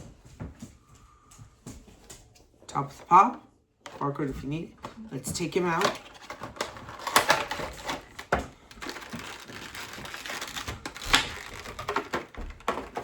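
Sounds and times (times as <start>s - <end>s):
crinkling cardboard and plastic: 2.8s - 13.0s.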